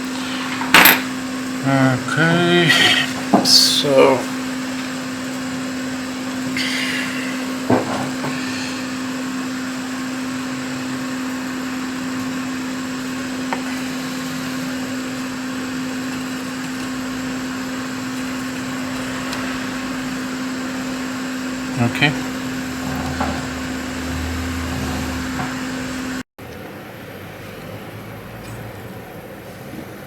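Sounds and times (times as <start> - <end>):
electric fan humming: 0.0 - 26.3.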